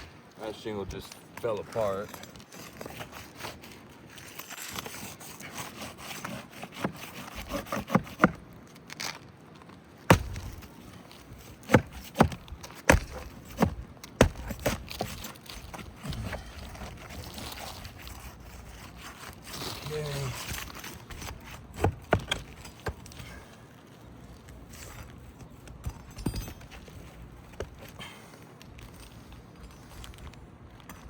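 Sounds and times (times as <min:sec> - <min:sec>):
roof shingle scraping and crackling: 0:00.0 - 0:31.0.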